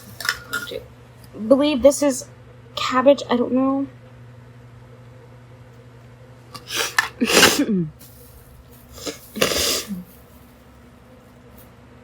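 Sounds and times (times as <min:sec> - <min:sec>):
girl sneezing: 0:06.7 - 0:07.9, 0:09.0 - 0:10.1.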